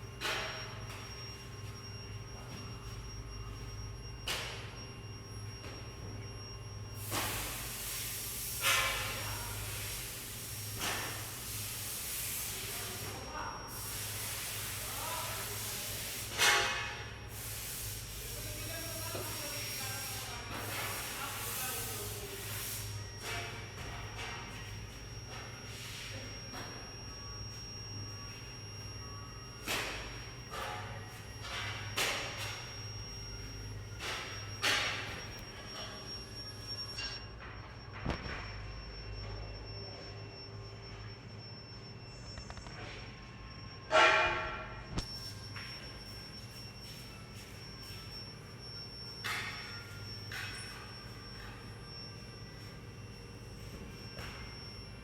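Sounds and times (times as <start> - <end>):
furnace low hum: 0.0 - 55.0
high-pitched whine: 0.0 - 55.0.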